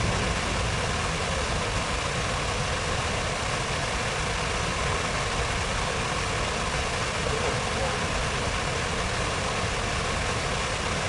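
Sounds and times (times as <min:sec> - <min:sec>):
traffic rumble: 0:00.0 - 0:06.0
fountain water: 0:00.0 - 0:11.0.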